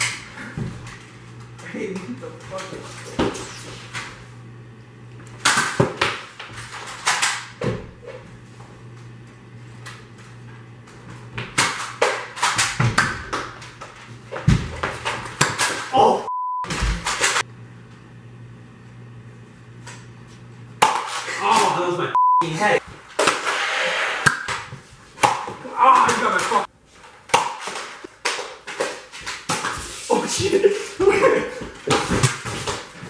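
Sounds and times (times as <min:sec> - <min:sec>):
censor bleep: 0:16.3 - 0:16.7, 0:22.2 - 0:22.5.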